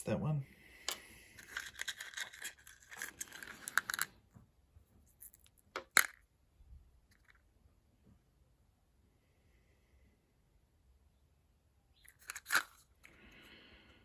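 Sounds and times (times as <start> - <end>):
stones rustling and scraping: 1.4 - 4.1, 12.1 - 12.9.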